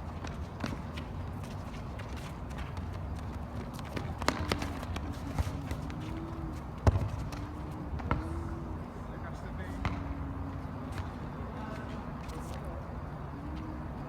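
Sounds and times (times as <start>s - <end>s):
feet running and scuffing: 0.0s - 7.5s
ball being kicked: 3.6s - 8.5s, 9.8s - 10.2s.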